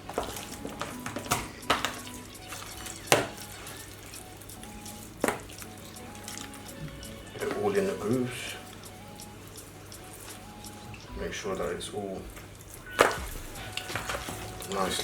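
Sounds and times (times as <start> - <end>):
soft background music: 0.0 - 15.0.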